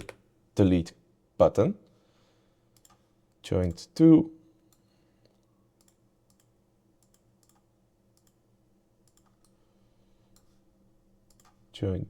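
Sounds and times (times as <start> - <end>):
faint computer mouse clicks: 2.7 - 3.0, 4.7 - 8.4, 9.0 - 9.6, 10.3 - 10.6, 11.3 - 11.6.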